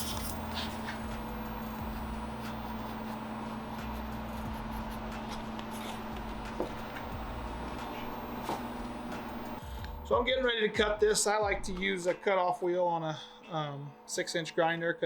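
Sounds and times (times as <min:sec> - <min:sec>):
mechanical hum: 0:00.0 - 0:10.4.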